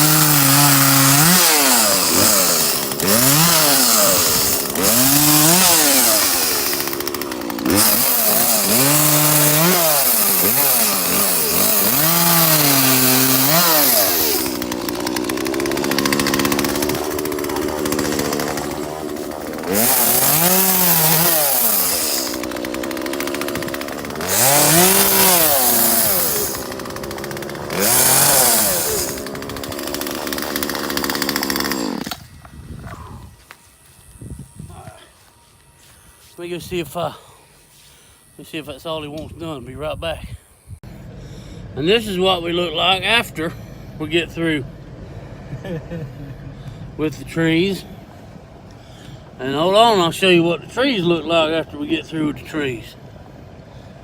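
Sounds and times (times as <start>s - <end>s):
chainsaw cutting and revving: 0.0s - 39.1s.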